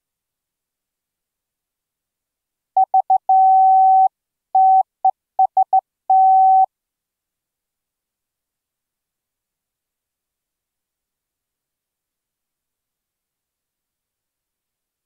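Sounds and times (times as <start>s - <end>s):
morse code beeps: 2.8s - 4.8s, 5.4s - 6.7s.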